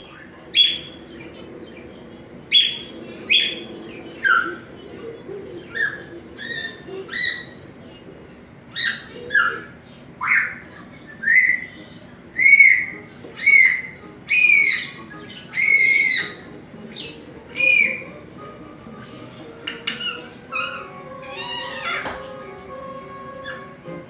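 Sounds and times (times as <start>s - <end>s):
parrot whistling: 0.1s - 1.2s, 2.5s - 4.7s, 5.6s - 7.7s, 12.4s - 18.2s, 19.6s - 24.0s.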